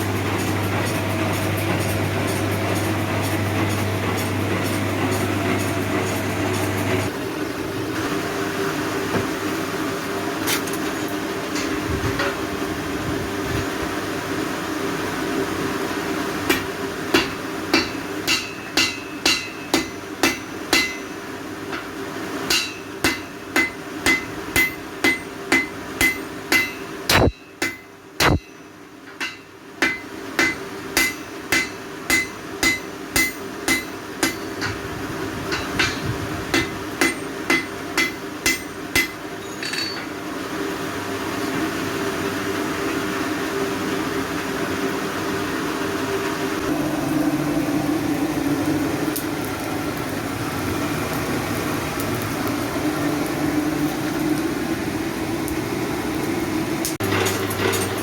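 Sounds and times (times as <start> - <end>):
steady hum: 0.0 - 9.1, 11.6 - 40.0
hammer ringing on anvil: 16.5 - 21.9, 22.5 - 34.8, 35.5 - 40.1.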